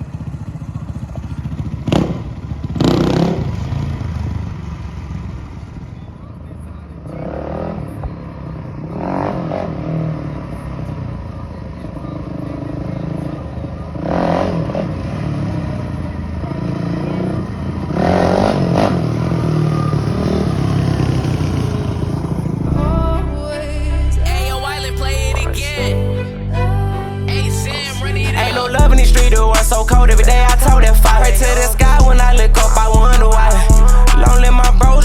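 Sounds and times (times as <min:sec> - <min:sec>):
dirt bike engine revving: 0:00.0 - 0:05.9, 0:14.0 - 0:25.8, 0:28.0 - 0:35.0
music: 0:22.7 - 0:35.0.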